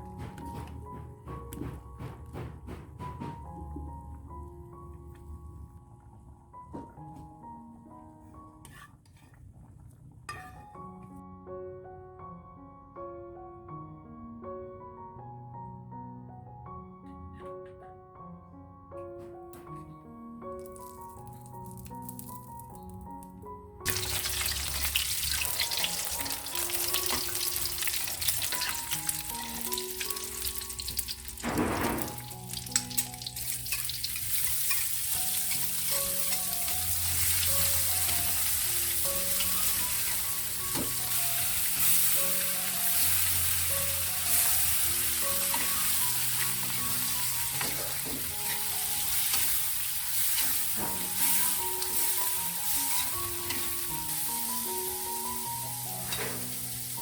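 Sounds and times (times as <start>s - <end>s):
background music: 0.0s - 8.9s, 10.3s - 57.0s
stirring in a pan: 8.7s - 10.6s, 32.1s - 56.8s
food sizzling in oil: 23.9s - 57.0s.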